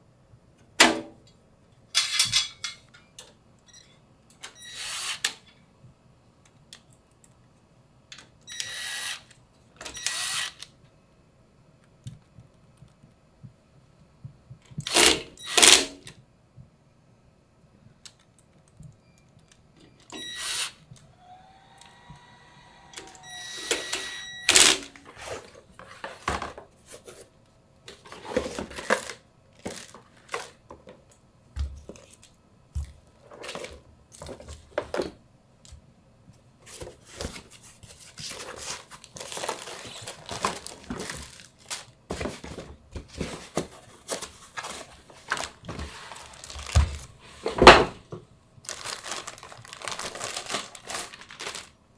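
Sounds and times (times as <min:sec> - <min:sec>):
computer parts clicking and knocking: 0:02.0 - 0:03.3
short squeaky tones: 0:21.2 - 0:24.5
plastic packaging crinkling: 0:28.1 - 0:30.6, 0:37.3 - 0:47.4, 0:48.6 - 0:51.9.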